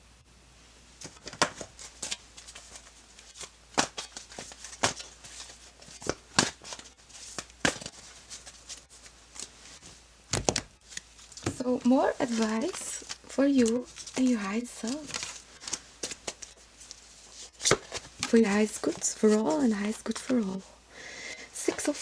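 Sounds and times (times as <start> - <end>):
tarot cards snapping and flicking: 1.0 - 8.5, 10.3 - 16.6.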